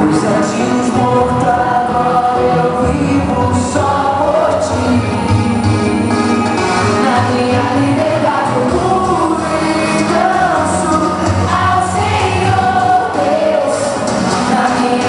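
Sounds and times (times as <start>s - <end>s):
pop song with sung vocals: 0.0s - 15.0s.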